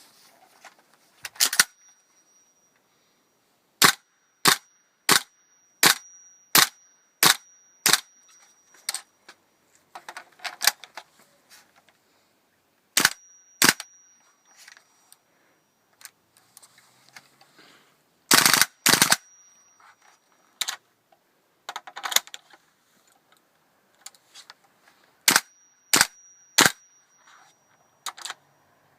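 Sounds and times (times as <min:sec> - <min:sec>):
airsoft rifle firing: 0:03.8 - 0:08.1, 0:13.0 - 0:13.9, 0:18.3 - 0:19.3, 0:25.3 - 0:26.8.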